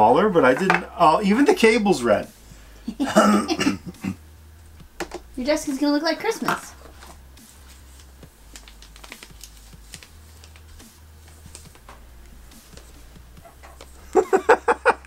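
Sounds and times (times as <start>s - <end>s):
packaging clicks and rustles: 7.8s - 11.9s.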